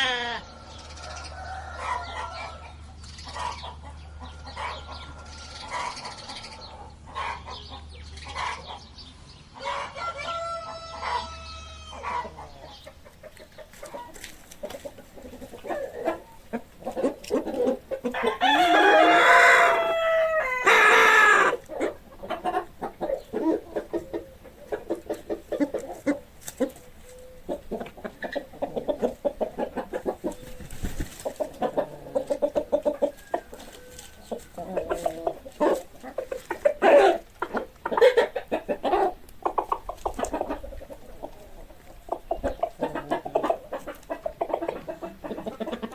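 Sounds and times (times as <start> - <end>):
chickens clucking: 0.0 - 45.9
rooster crowing: 9.6 - 12.2, 18.2 - 21.6.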